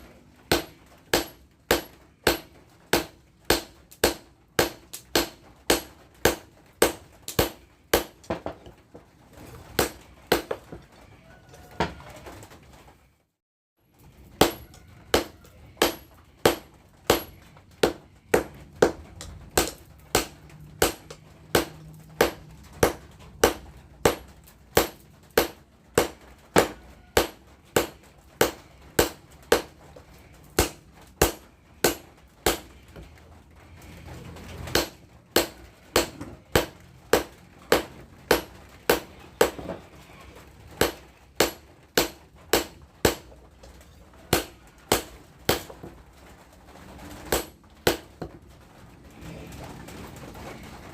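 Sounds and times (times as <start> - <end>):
hammer striking steel: 0.0 - 8.6, 9.8 - 10.6, 14.4 - 19.0, 19.6 - 29.7, 30.6 - 32.7, 34.7 - 39.6, 40.8 - 43.3, 44.3 - 45.7.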